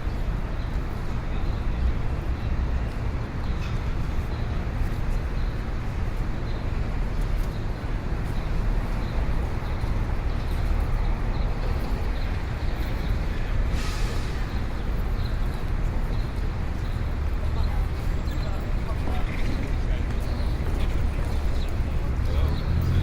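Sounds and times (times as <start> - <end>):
low rumble of traffic: 0.0 - 23.0
faint crowd noise: 7.4 - 23.0
brief sharp hiss: 13.8 - 14.5.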